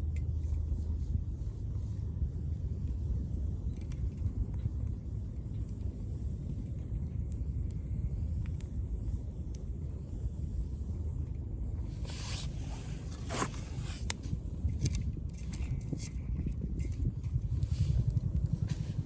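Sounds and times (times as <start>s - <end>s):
fire crackling and popping: 0.0s - 19.0s
fire hissing: 0.8s - 14.6s
wood fire rumbling: 16.2s - 19.0s.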